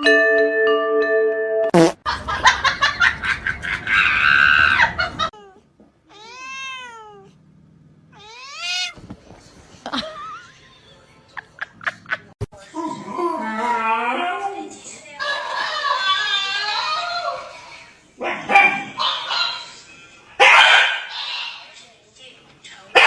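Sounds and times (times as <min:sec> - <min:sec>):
cat meowing: 0:05.4 - 0:07.4, 0:08.2 - 0:09.0.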